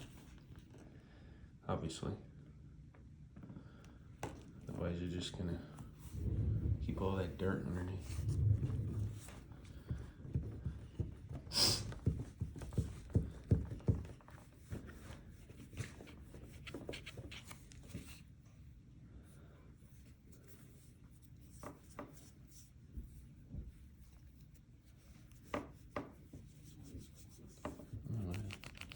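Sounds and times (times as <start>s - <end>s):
handling knocks: 5.8s - 15.7s.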